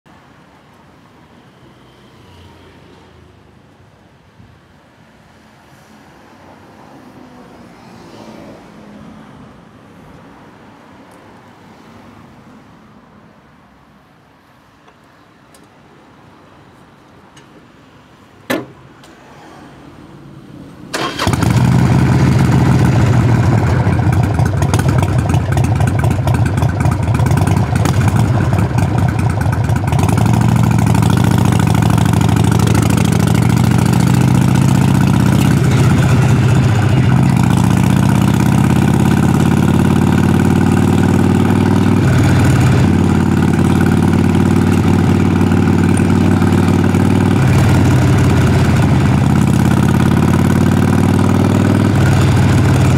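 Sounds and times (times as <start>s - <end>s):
engine cranking: 20.9s - 31.9s
motorcycle engine idling: 21.0s - 52.9s.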